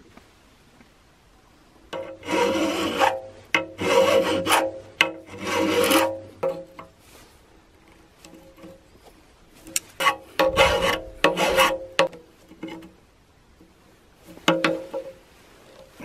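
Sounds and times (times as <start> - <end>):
rough rasping strokes: 1.9 - 13.0.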